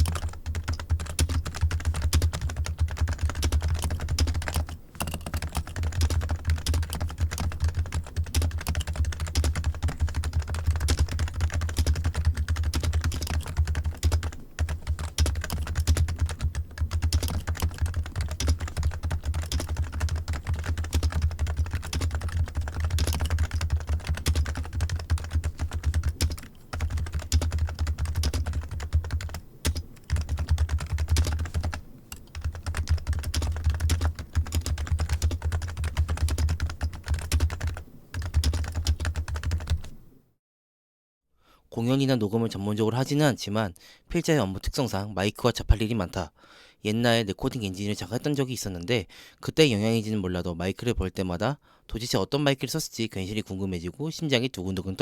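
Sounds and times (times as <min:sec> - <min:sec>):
computer keyboard typing: 0:00.0 - 0:40.0.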